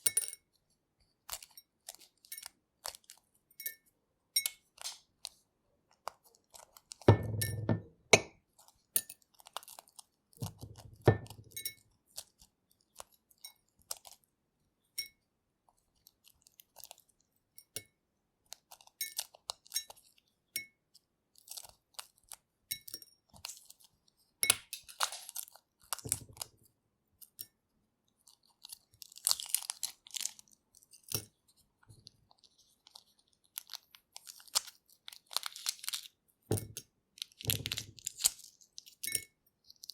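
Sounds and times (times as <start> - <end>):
egg shells cracking: 8.2 - 14.3, 18.4 - 20.2, 20.8 - 26.6, 28.2 - 39.9.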